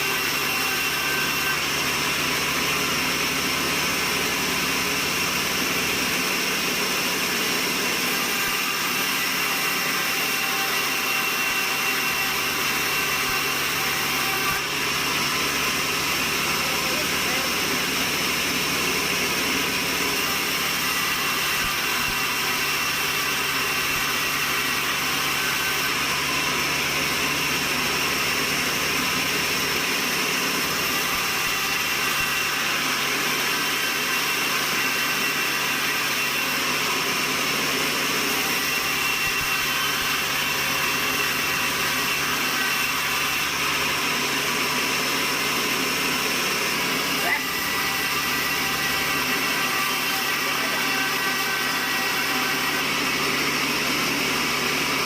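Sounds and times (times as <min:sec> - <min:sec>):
sawmill machinery running: 0:00.0 - 0:55.0.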